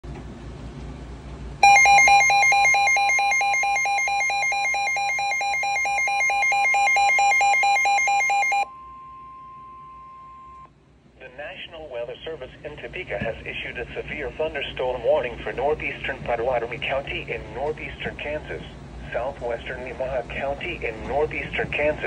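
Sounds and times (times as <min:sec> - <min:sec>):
warbling electronic alarm: 0:01.6 - 0:10.4
steady single alarm tone: 0:01.6 - 0:10.7.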